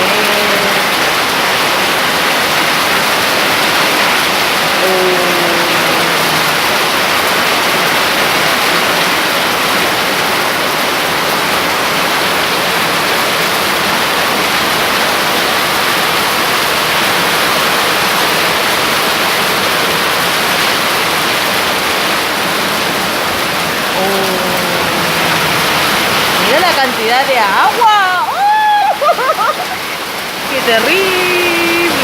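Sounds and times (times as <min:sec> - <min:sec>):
heavy rain downpour: 0:00.0 - 0:32.0.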